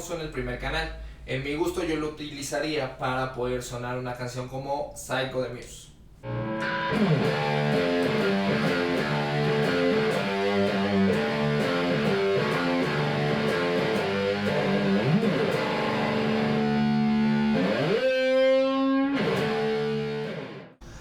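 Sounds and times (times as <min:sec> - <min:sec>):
distorted electric guitar riff: 0:06.2 - 0:20.8.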